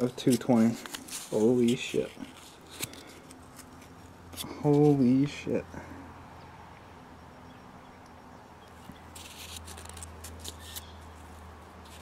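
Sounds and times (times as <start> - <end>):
faint scraping and rustling: 0.0 - 5.2.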